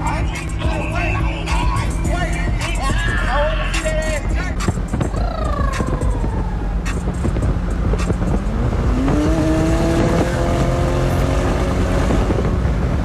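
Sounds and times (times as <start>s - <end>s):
road noise: 0.0s - 13.0s
sports car engine revving: 0.0s - 13.0s
wind noise: 0.0s - 13.0s.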